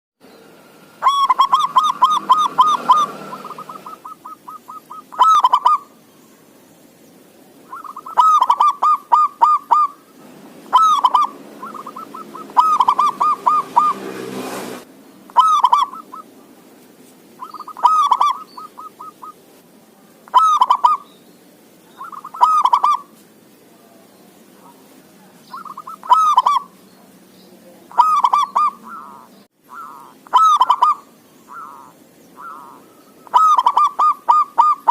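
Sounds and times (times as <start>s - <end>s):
dove cooing: 1.0s - 6.0s, 7.6s - 14.4s, 15.3s - 16.6s, 17.4s - 19.4s, 20.3s - 21.1s, 21.9s - 23.2s, 24.6s - 26.8s, 27.8s - 34.9s.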